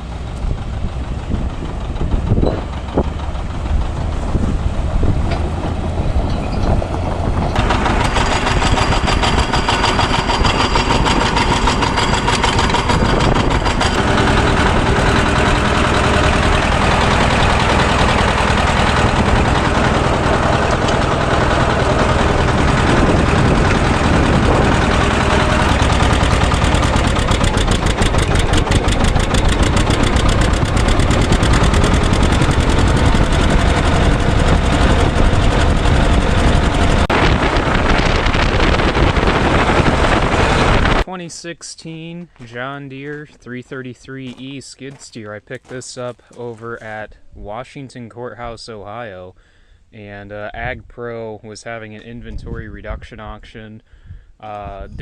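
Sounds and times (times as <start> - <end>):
vehicle engine running: 0.0 - 41.1.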